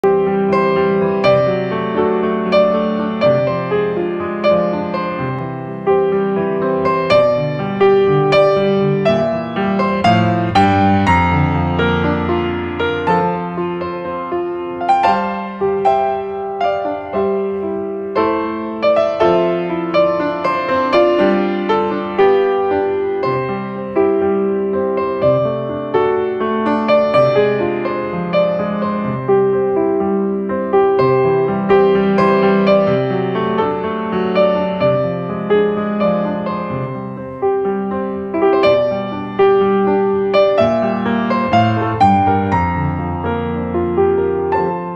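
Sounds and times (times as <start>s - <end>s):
slow gentle piano music: 0.0s - 44.9s.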